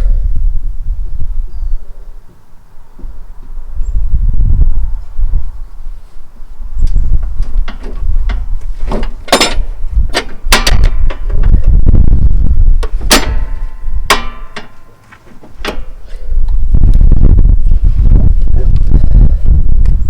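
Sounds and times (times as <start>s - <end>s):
metal clanks and knocks: 7.2s - 11.7s, 12.8s - 16.3s.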